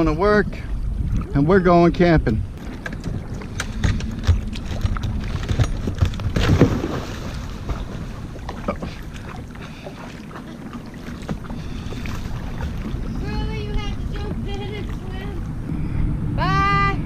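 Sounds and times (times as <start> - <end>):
wind buffeting microphone: 0.0 - 17.0
paddle splashes and knocks: 2.2 - 15.6.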